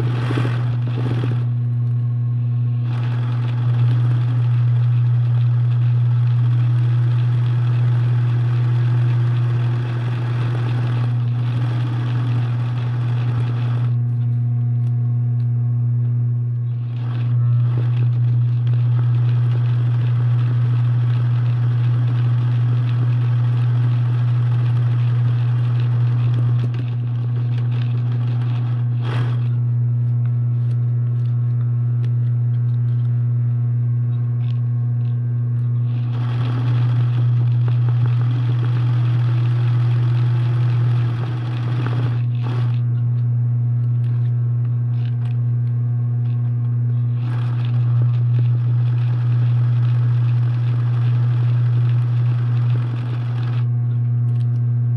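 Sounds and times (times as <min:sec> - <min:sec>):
loud steady low hum: 0:00.0 - 0:54.9.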